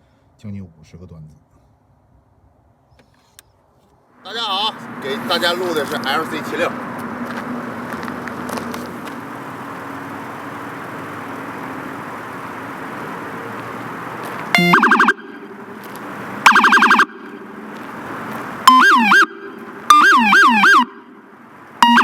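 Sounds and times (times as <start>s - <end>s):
electronic siren: 14.5s - 15.8s, 16.4s - 17.6s, 18.6s - 22.0s.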